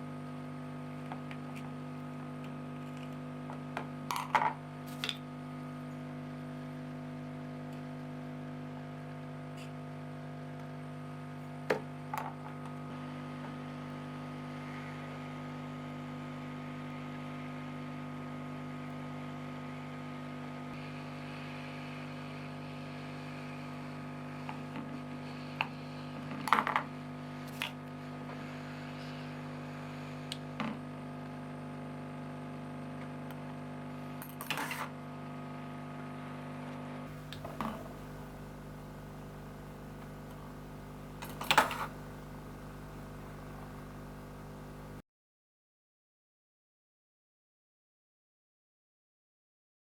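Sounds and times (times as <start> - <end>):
electrical hum: 37.0 - 45.0.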